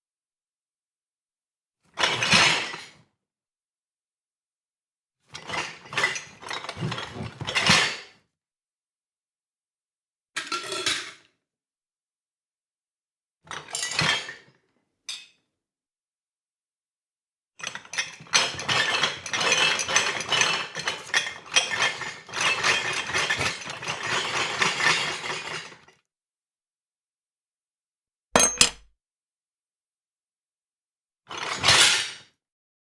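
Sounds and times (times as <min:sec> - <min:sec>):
dishes and cutlery rattling: 0:28.4 - 0:28.9
sharp knock: 0:28.4 - 0:28.9.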